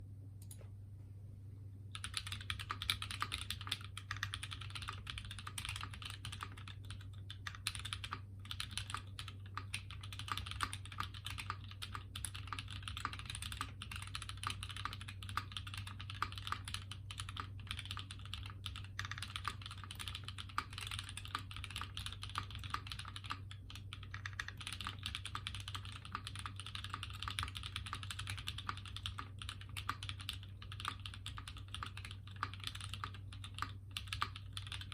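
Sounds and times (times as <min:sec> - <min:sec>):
steady low hum: 0:00.0 - 0:34.9
fast mechanical keyboard typing: 0:01.9 - 0:34.9.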